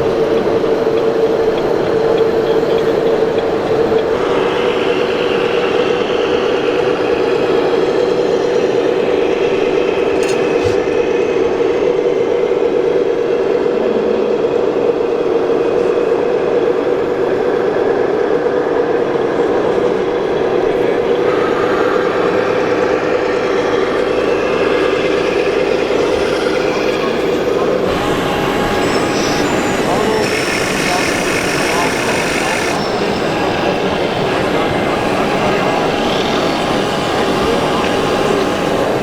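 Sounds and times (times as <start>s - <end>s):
electric motors whining: 0.0s - 12.7s, 19.1s - 39.0s
higher-pitched whine: 3.9s - 12.4s, 18.6s - 39.0s.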